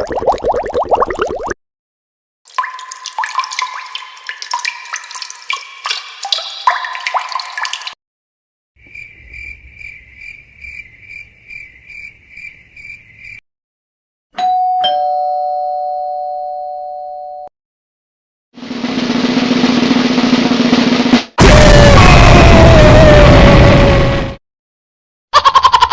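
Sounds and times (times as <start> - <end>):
ding-dong doorbell chime: 14.4 - 17.5.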